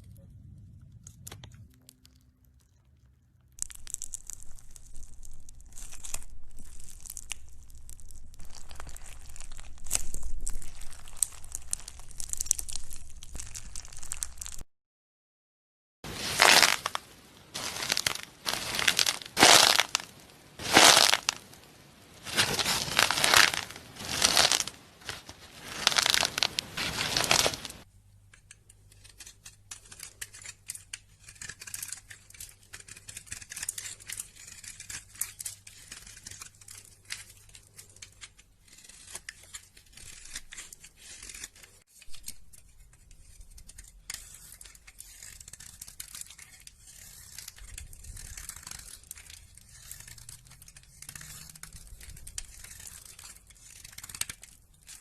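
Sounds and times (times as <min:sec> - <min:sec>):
low steady hum: 0:00.0 - 0:13.4
loud rasping tearing strokes: 0:16.1 - 0:27.8, 0:43.8 - 0:55.0
fine crackling: 0:16.1 - 0:27.9.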